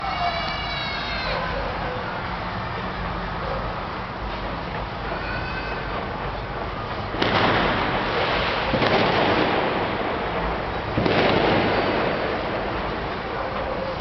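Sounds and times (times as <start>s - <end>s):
fireworks bangs and crackle: 4.2s - 14.0s.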